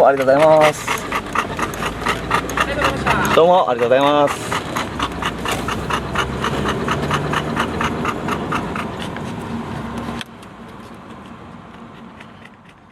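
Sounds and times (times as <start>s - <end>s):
dog panting rapidly: 0.0s - 9.1s
steady engine hum: 0.0s - 12.9s.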